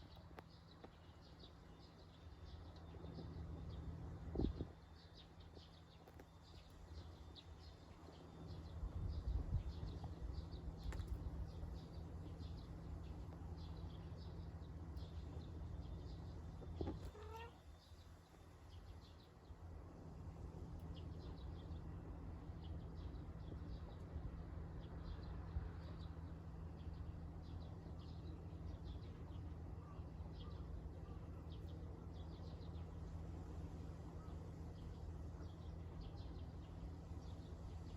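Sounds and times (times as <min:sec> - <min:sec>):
low outdoor rumble: 0:00.0 - 0:37.9
cat meowing: 0:17.1 - 0:17.6.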